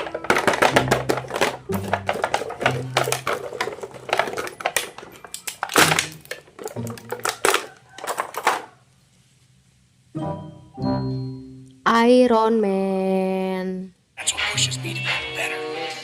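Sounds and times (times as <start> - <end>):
packaging being handled: 0.0 - 8.4
plastic toy parts clattering: 0.0 - 8.8.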